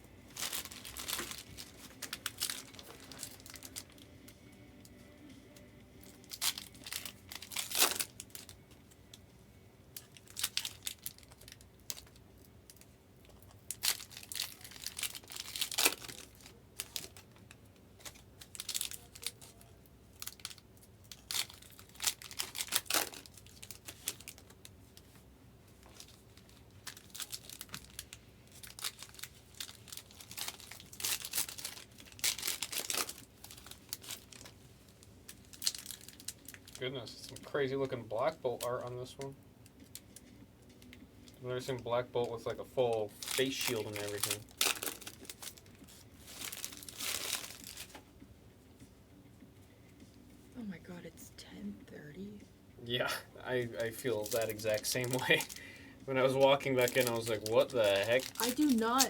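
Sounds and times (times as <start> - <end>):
wrappers crinkling: 0.2 - 9.2, 9.9 - 48.2, 53.5 - 59.0
card packs tearing open: 0.3 - 4.0, 6.0 - 8.6, 10.0 - 12.2, 13.5 - 24.6, 25.9 - 34.6, 35.3 - 36.8, 42.2 - 48.0, 53.7 - 59.0.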